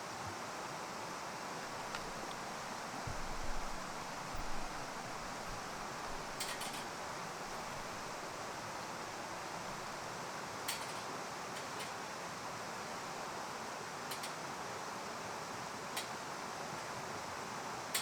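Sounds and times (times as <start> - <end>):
wood fire hissing: 1.0 - 14.0
fire crackles: 1.6 - 8.4.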